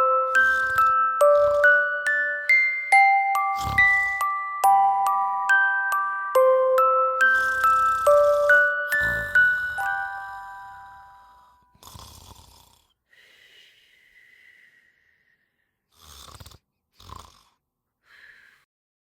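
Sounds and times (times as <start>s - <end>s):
music chime: 0.0s - 11.5s
dog snoring: 0.1s - 4.4s, 7.2s - 13.0s, 15.9s - 17.6s.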